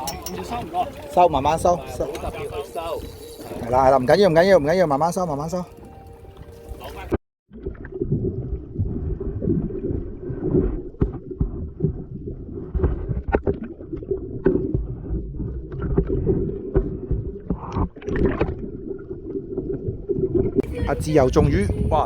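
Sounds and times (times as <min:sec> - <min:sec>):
wind buffeting microphone: 0:00.0 - 0:04.8, 0:20.6 - 0:22.0.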